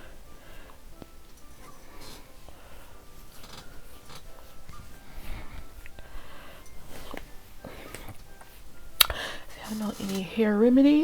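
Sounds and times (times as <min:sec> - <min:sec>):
hands rustling in hair: 0:01.0 - 0:08.8.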